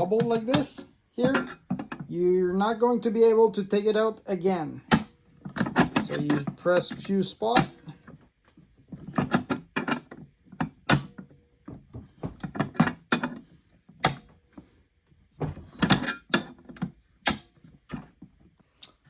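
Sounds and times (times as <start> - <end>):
locking pliers clicking and clunking: 4.9 - 8.2, 8.9 - 14.4, 15.4 - 18.2.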